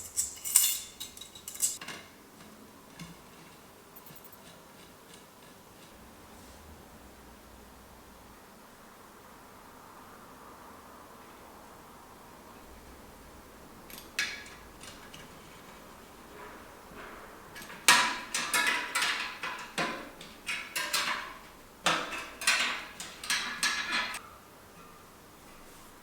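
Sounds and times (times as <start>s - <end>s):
metal tools clinking: 0.0s - 1.9s, 20.5s - 24.2s.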